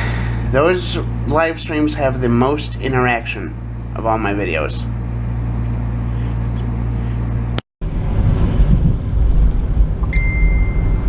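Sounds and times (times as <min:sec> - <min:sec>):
high-pitched beep: 0:10.0 - 0:11.0.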